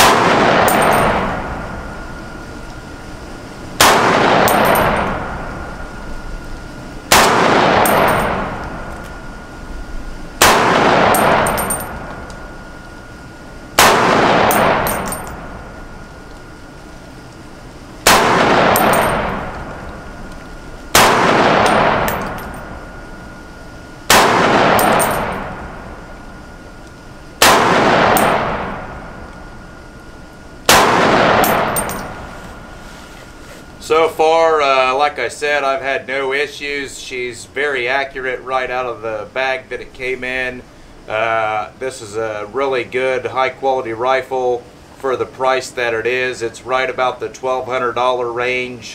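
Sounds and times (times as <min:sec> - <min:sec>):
rifle shots echoing: 0:00.0 - 0:01.9, 0:03.8 - 0:05.7, 0:07.1 - 0:09.1, 0:10.4 - 0:12.4, 0:13.8 - 0:15.8, 0:18.0 - 0:20.3, 0:20.9 - 0:23.2, 0:24.1 - 0:26.3, 0:27.4 - 0:29.5, 0:30.7 - 0:32.7.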